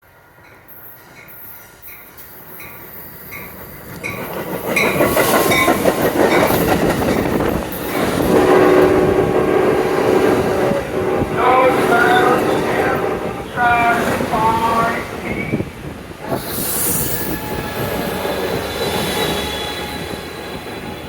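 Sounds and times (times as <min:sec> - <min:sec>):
train rumble and wheel noise: 0:00.0 - 0:21.0
locomotive horn chord: 0:08.0 - 0:15.4.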